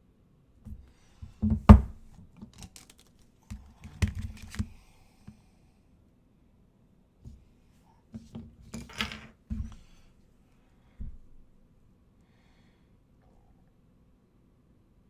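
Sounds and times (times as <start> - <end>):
objects knocking on hard surface: 1.4 - 2.0.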